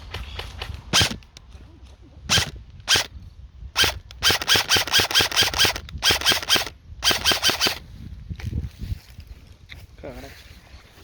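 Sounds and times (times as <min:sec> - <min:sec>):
airsoft gun shots: 0:03.8 - 0:07.8.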